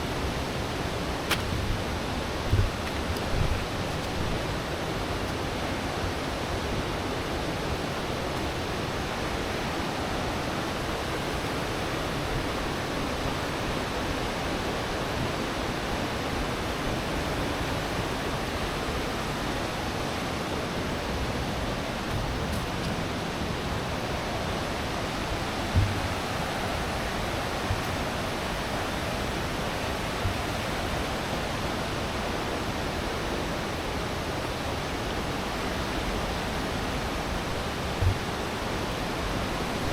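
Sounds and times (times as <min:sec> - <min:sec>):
faint low thump: 0:01.3 - 0:04.4, 0:22.0 - 0:28.8, 0:38.0 - 0:38.6.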